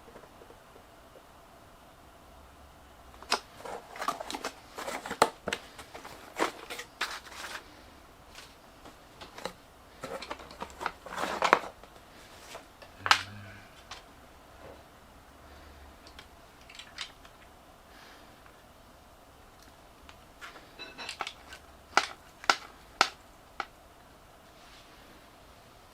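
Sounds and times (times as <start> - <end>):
plastic parts clicking and rustling: 3.2 - 14.1, 16.0 - 17.5, 19.6 - 23.7.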